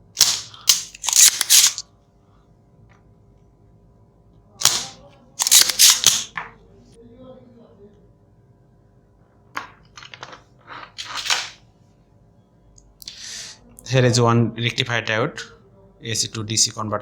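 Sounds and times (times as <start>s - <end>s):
sharp clicks and scrapes: 0.2s - 1.8s, 4.6s - 6.3s.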